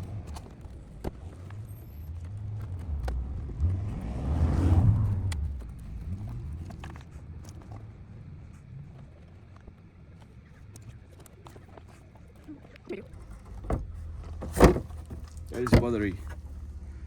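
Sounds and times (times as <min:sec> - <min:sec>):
vehicle passing by: 0:01.8 - 0:07.3.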